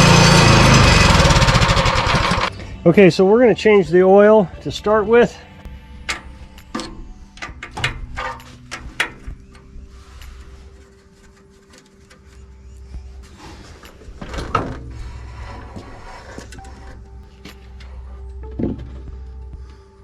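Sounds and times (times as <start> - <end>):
loud clatter: 0.0 - 2.5
tools clicking and knocking: 6.1 - 9.7.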